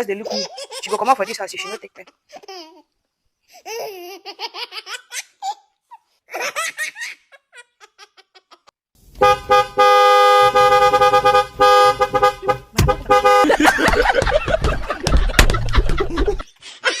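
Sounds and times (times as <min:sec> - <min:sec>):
car horn honking: 0:09.0 - 0:14.2.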